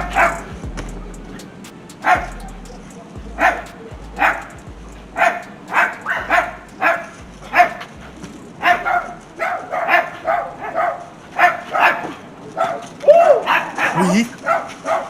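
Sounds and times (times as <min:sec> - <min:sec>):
dog barking: 0:00.0 - 0:00.5, 0:02.0 - 0:02.4, 0:03.4 - 0:04.5, 0:05.2 - 0:07.9, 0:08.6 - 0:15.0.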